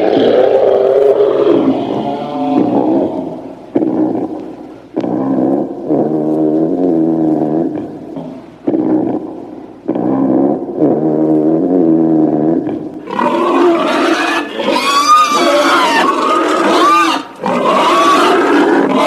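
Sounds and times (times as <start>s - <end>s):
monster screaming roars: 0.0s - 3.5s, 13.1s - 19.0s.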